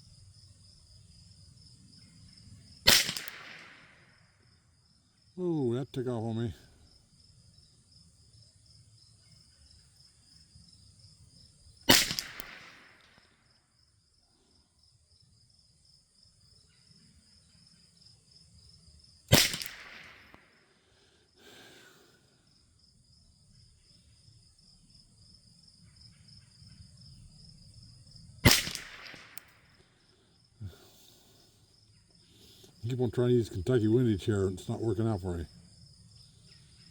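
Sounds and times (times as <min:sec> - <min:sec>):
insects trilling: 0:00.0 - 0:36.9
rifle shots: 0:02.9 - 0:04.1, 0:11.9 - 0:13.2, 0:19.3 - 0:20.5, 0:28.4 - 0:29.6.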